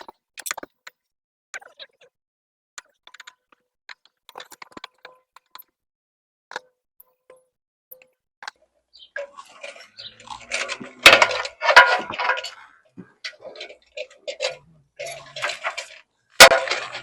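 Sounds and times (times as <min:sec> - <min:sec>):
clicks and knocks: 0:09.2 - 0:17.0
scraping: 0:09.2 - 0:17.0.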